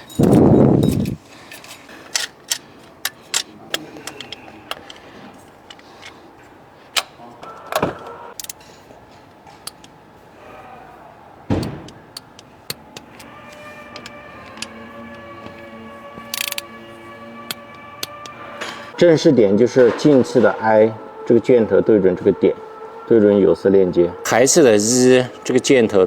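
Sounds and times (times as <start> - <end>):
metallic clicks of tools: 8.4 - 8.7, 16.3 - 16.7
loud knocks: 11.5 - 12.0
background music: 12.7 - 26.0.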